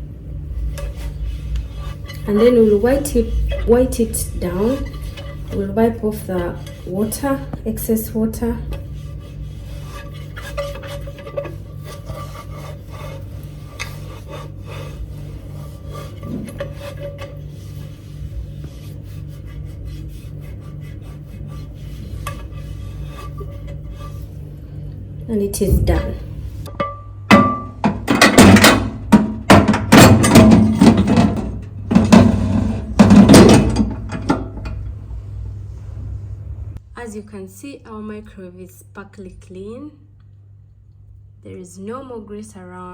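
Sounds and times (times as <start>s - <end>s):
cloth wiping wet tray: 0.5s - 24.8s
microwave parts knocking: 26.7s - 34.9s.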